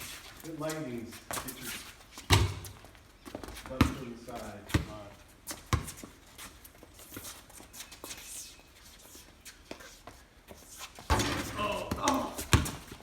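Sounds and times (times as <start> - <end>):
basketball bouncing on wet court: 2.3 - 2.8, 3.8 - 4.0, 4.7 - 5.0, 11.1 - 13.0.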